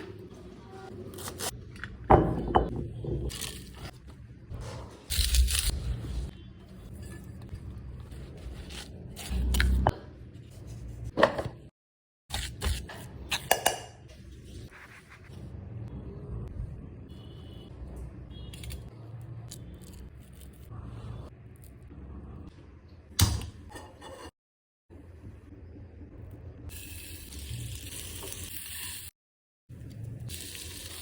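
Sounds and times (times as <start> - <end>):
utensils scraping cookware: 23.7 - 24.4.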